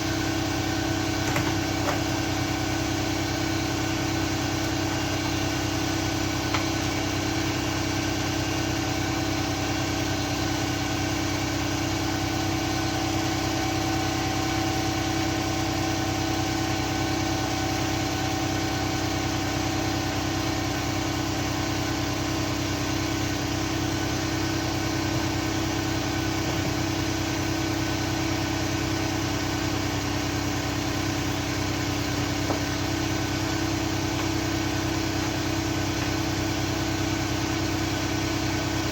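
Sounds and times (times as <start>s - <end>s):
steady mechanical drone: 19.2s - 38.9s.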